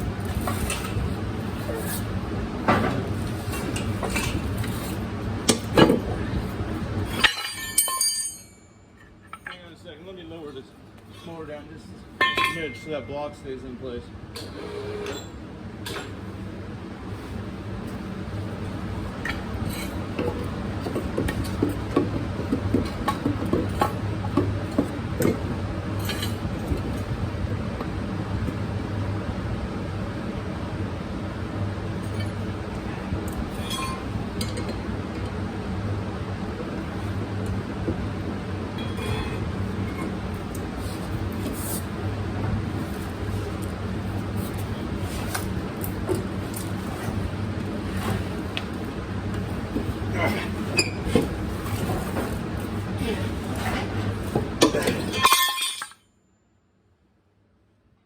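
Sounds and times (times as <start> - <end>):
steady low hum: 0.0 - 56.0
metal tools clanking on blade: 7.1 - 8.7, 12.2 - 13.1, 54.6 - 56.0
metal tools knocking on metal: 12.2 - 13.1.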